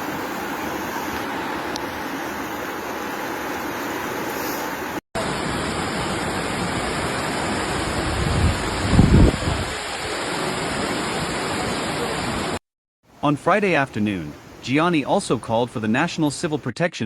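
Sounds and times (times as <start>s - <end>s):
floodwater rushing: 0.0s - 12.6s.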